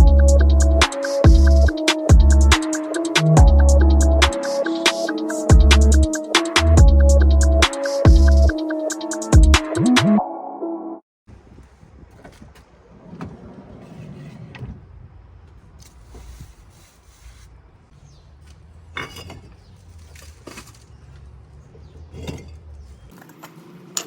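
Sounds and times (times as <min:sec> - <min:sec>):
bricks knocking and scraping: 0:18.5 - 0:24.0.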